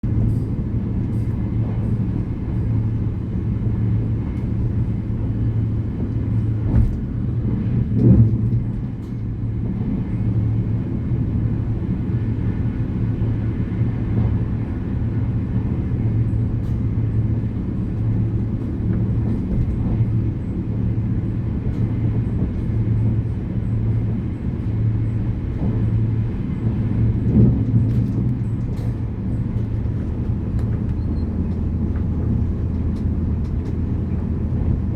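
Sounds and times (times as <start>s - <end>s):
train rumble inside carriage: 0.0s - 34.9s
train knocks: 0.1s - 10.1s.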